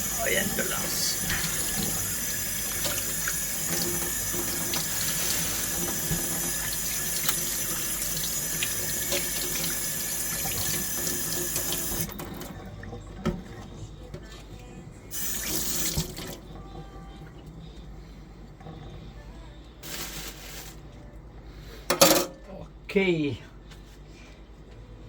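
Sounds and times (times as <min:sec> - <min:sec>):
tap water running into sink: 0:00.0 - 0:12.6, 0:15.2 - 0:16.4.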